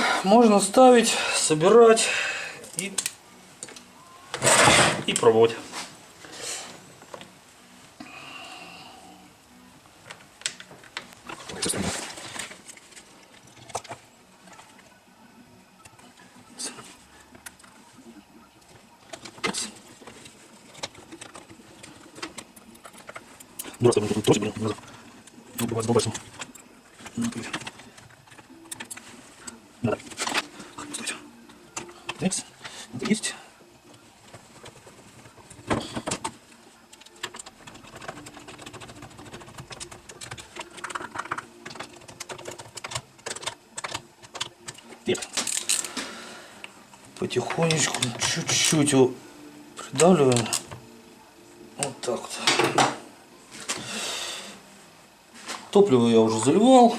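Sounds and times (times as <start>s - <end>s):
plastic and metal parts clicking: 19.1s - 24.9s, 34.3s - 46.0s.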